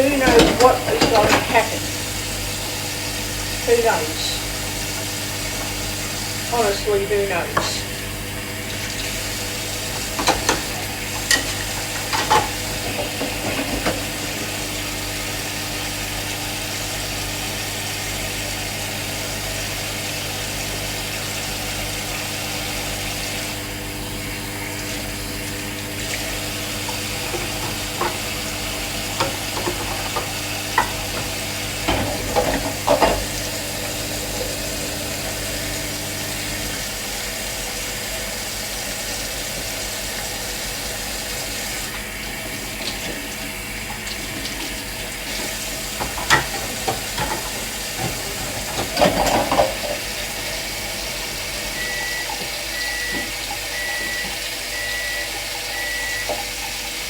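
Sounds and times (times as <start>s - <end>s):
kitchen things clicking and clattering: 0.0s - 2.1s, 8.8s - 14.4s, 26.9s - 34.7s, 45.3s - 50.3s
electric appliance hum: 0.0s - 57.0s.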